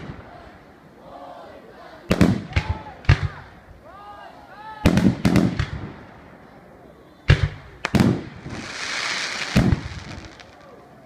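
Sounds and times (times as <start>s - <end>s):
fireworks hiss: 7.8s - 10.7s.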